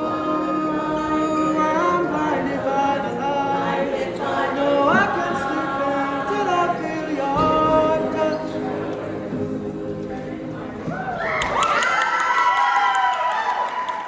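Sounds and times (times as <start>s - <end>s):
group singing a cappella: 0.0s - 11.0s.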